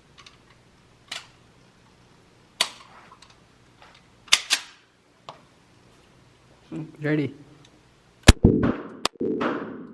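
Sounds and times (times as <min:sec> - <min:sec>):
gunshots: 0:08.3 - 0:09.9.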